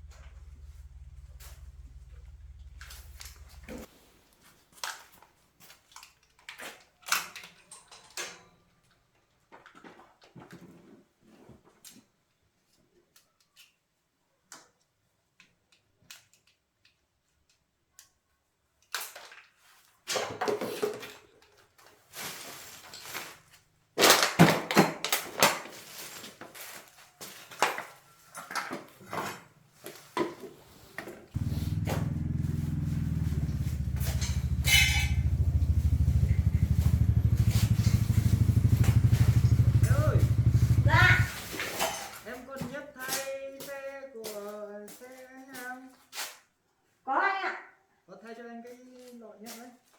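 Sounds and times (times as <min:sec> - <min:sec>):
motorcycle engine idling: 0:00.0 - 0:03.9, 0:31.4 - 0:41.6
metal clattering and knocks: 0:31.7 - 0:39.1.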